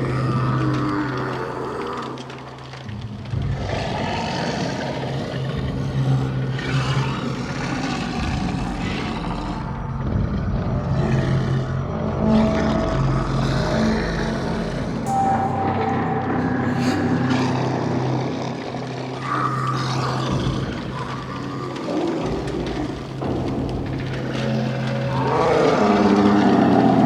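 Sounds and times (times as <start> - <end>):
low droning rumble: 14.6 - 27.0.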